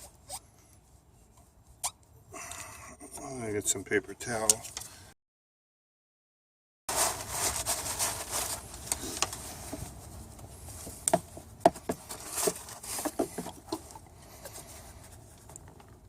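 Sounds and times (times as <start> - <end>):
paper towel rustling: 6.9 - 11.1.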